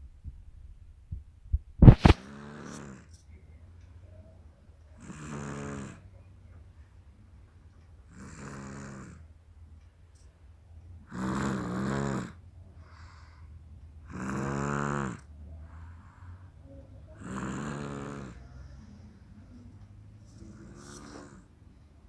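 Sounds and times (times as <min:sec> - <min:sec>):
girl snoring: 0:01.8 - 0:02.2, 0:11.1 - 0:12.3, 0:14.1 - 0:15.2, 0:17.2 - 0:18.6
faint breaths: 0:12.6 - 0:22.0.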